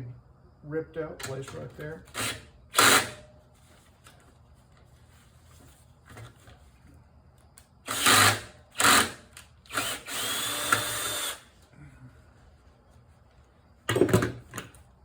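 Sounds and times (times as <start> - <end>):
tools and parts clattering: 13.9 - 14.8.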